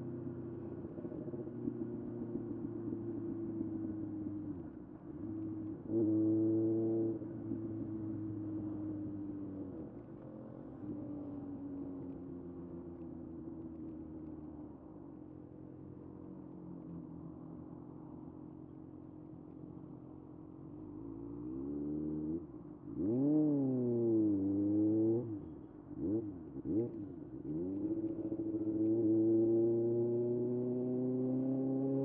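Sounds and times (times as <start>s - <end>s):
motorcycle engine revving: 26.0s - 32.0s.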